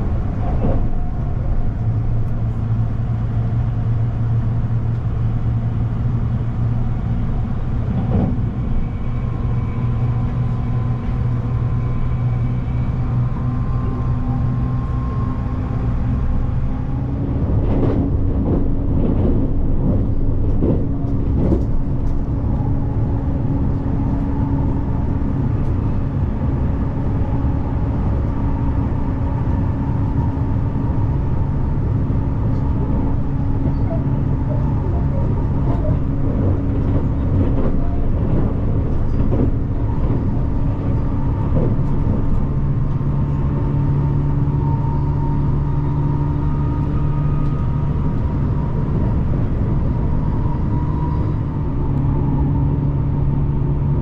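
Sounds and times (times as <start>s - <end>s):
electric train rumbling: 0.0s - 54.0s.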